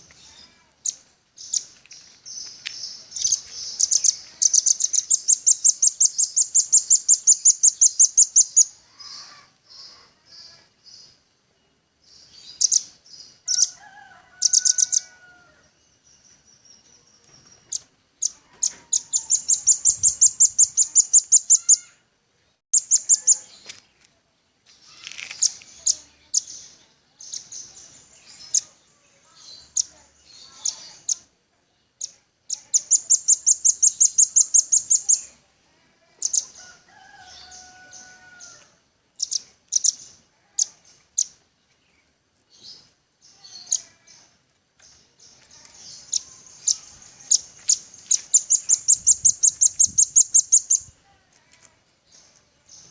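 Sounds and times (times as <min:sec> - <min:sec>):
bird chips and rattling trills: 0:44.9 - 0:50.9.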